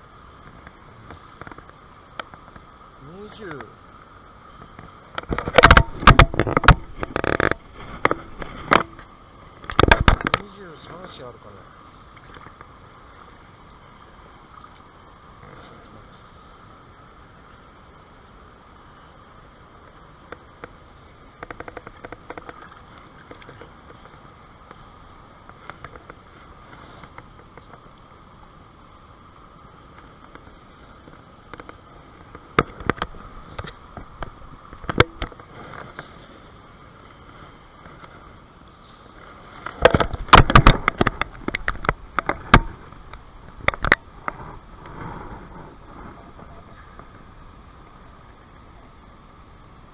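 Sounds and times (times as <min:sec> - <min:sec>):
mountain stream running: 0:00.0 - 0:49.9
sharp knocks and clicks: 0:05.2 - 0:09.0, 0:09.6 - 0:10.5, 0:32.6 - 0:35.4, 0:39.7 - 0:44.4.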